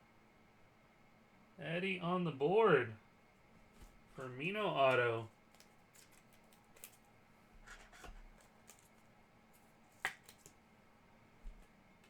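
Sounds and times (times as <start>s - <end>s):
trading cards rustling: 4.9s - 7.0s, 7.7s - 10.6s.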